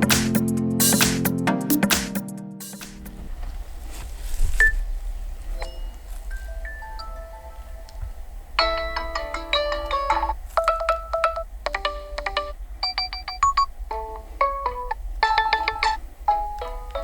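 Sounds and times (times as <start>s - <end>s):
phone alarm tone melody: 5.6s - 17.0s.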